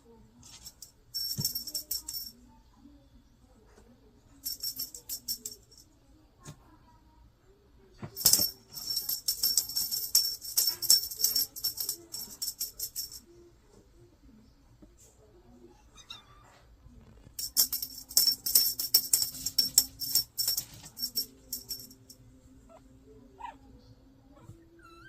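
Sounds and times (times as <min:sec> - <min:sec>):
jingle bell shaken: 0:00.4 - 0:02.4, 0:04.4 - 0:05.8, 0:08.2 - 0:13.2, 0:17.4 - 0:22.2.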